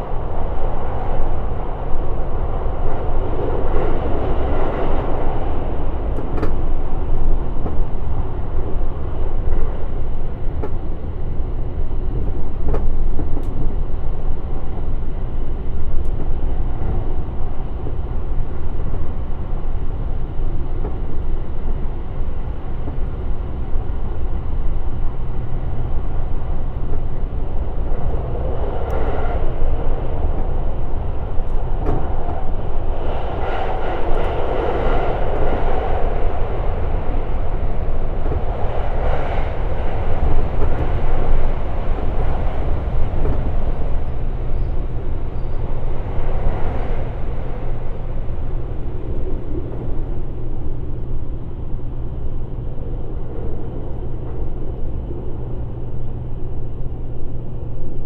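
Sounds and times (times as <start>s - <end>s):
train wheels rumbling on rail: 0.0s - 58.0s.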